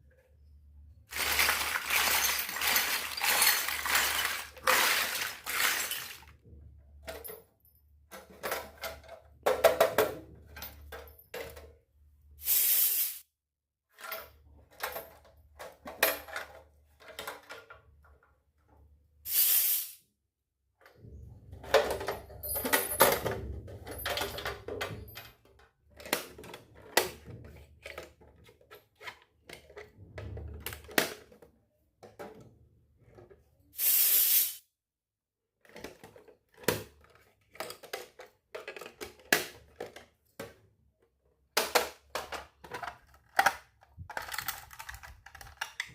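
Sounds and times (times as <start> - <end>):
packaging rustling: 1.1 - 6.3
small plastic pieces clicking: 1.1 - 6.3, 41.6 - 45.9.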